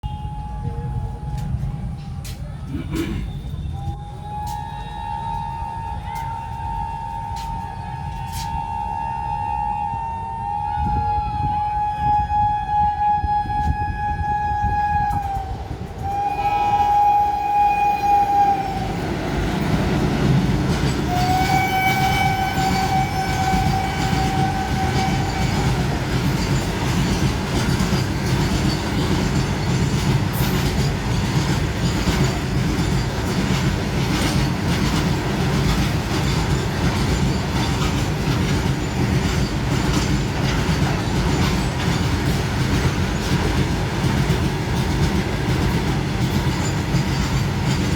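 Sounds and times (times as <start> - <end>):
train horn blasts: 0.0 - 19.8, 20.8 - 29.4
train rumbling past: 0.0 - 47.9
wheels clattering over rail joints: 19.0 - 47.9.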